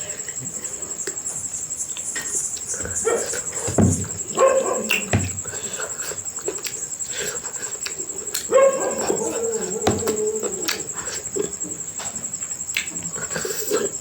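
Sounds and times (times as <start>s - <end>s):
knocks: 3.6s - 4.3s, 5.0s - 5.5s, 9.8s - 10.3s.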